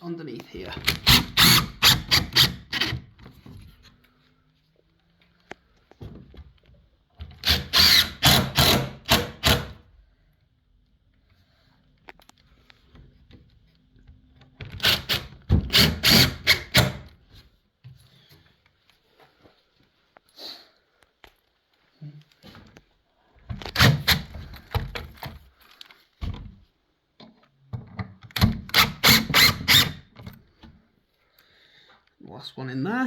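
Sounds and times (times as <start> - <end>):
screws driven into wood: 0.8 - 3.1, 7.3 - 9.8, 14.7 - 17.1, 23.6 - 24.6, 28.4 - 30.1.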